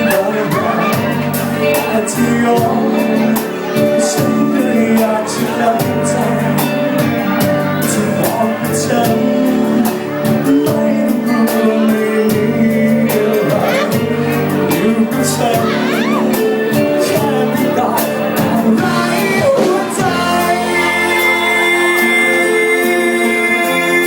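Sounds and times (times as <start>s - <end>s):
pop song with steady beat: 1.6s - 24.0s.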